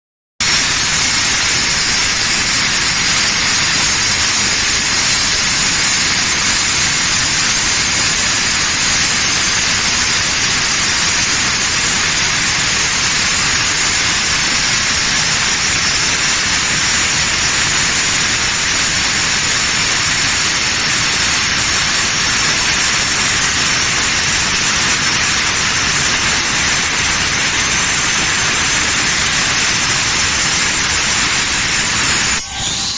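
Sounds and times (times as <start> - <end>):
angle grinder cutting stone: 0.4 - 32.9.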